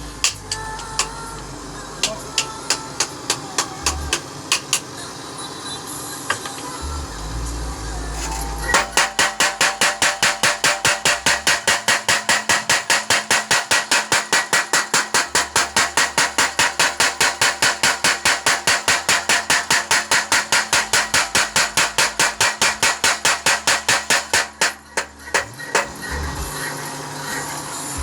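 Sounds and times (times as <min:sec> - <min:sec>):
power hammer pounding: 0:08.7 - 0:26.1.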